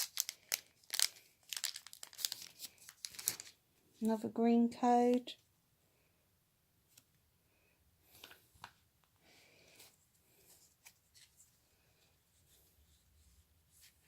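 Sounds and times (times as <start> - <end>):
trading cards rustling and clicking: 0.0 - 3.5.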